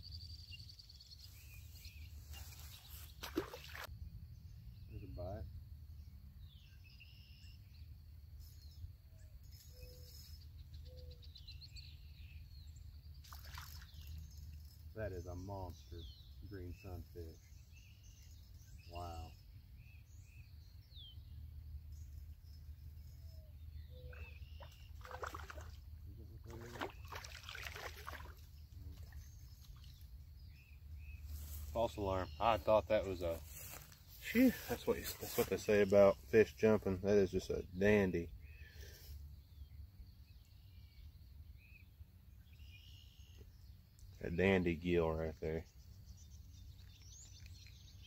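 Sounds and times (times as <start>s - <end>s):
small birds chirping: 0.0s - 48.0s
water splashing: 3.2s - 3.9s, 13.2s - 14.2s, 24.1s - 29.9s.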